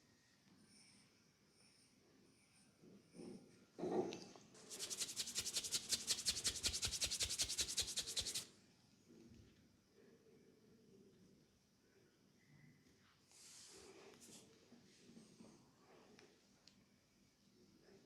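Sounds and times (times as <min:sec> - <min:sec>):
hands rubbing briskly: 0:04.6 - 0:08.5.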